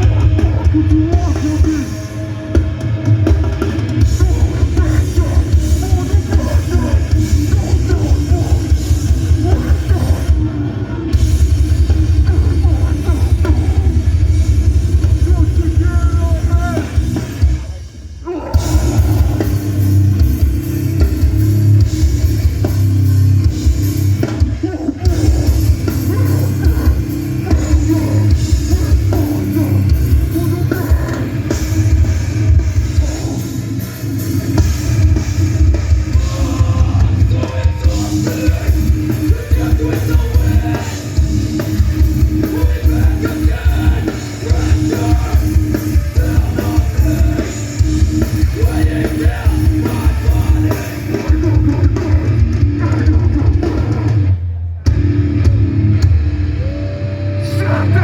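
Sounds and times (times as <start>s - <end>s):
distorted guitars: 0.0s - 58.0s
live hardcore band playing: 0.0s - 58.0s
pounding drum kit: 0.0s - 58.0s
shouted vocals: 4.0s - 11.2s, 12.0s - 14.2s, 17.6s - 19.8s, 24.4s - 31.5s, 36.1s - 41.2s, 56.5s - 58.0s.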